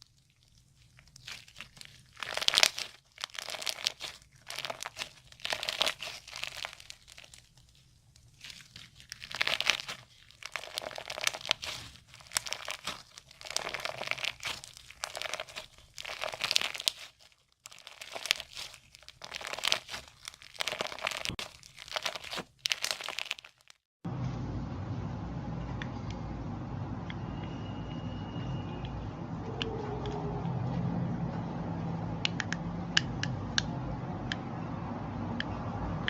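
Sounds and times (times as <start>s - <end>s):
slime crackling when squeezed: 0.0s - 23.8s.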